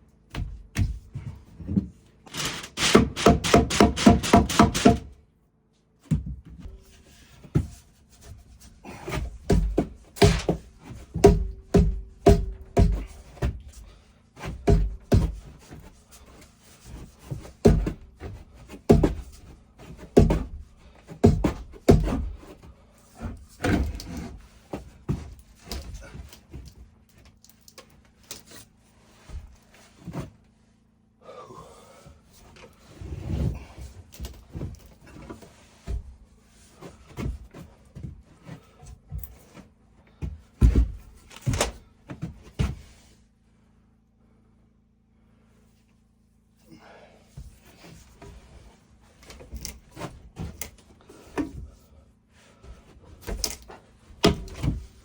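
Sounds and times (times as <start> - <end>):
wooden knocks and thuds: 9.0 - 13.7, 14.4 - 15.9, 17.0 - 22.6, 40.1 - 42.8, 53.2 - 55.0.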